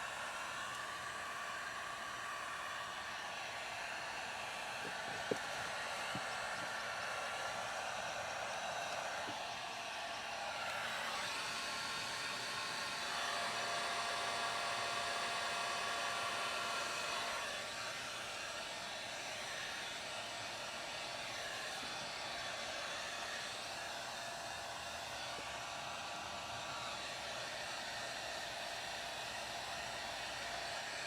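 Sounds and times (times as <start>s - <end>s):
blower rushing air: 0.0s - 13.7s
faint motor whine: 0.0s - 31.0s.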